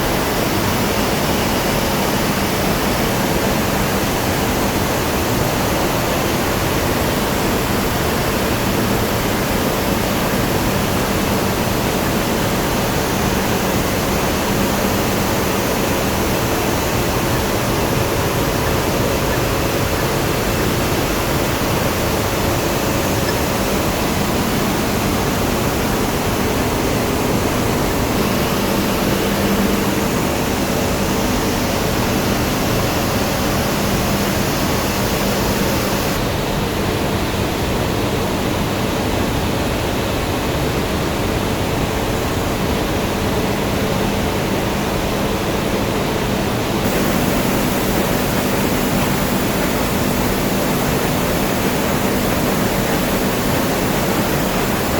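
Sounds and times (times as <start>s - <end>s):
furnace roaring: 12.8s - 36.3s, 46.7s - 54.9s.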